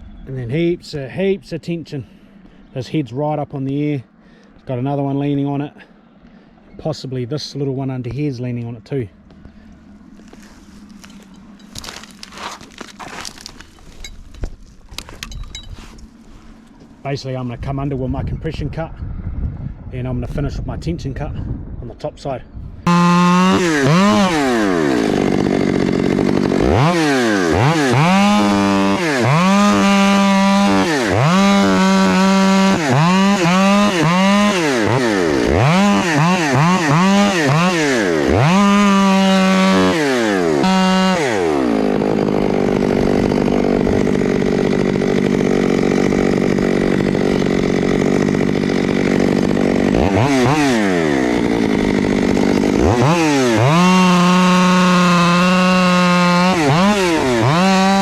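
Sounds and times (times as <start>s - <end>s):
chainsaw revving and cutting: 9.9s - 14.1s, 22.9s - 58.0s.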